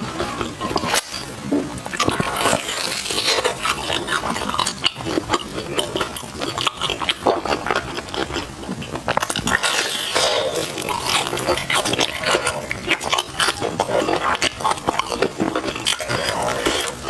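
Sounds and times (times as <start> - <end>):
chewing and mouth smacking: 0.1 - 17.0.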